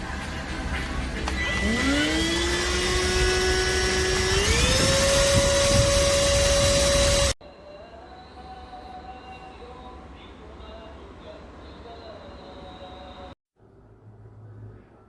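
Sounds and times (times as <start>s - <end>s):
vacuum cleaner motor whine: 1.3s - 7.4s.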